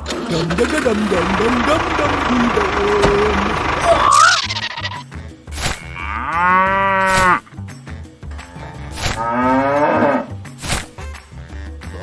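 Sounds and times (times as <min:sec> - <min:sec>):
cow mooing: 0:05.8 - 0:07.4, 0:08.6 - 0:10.3.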